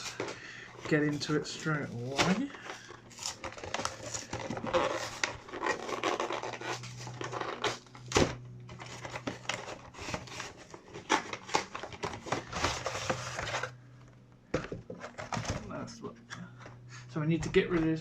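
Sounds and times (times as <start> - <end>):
packaging rustling and crinkling: 0.0 - 13.8
steady low hum: 0.0 - 18.0.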